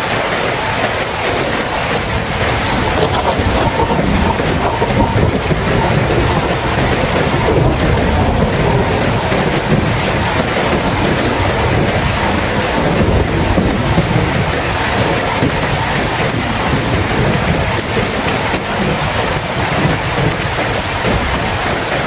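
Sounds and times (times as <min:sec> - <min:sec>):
steady rain: 0:00.0 - 0:22.0
thunder rumbling: 0:00.0 - 0:22.0.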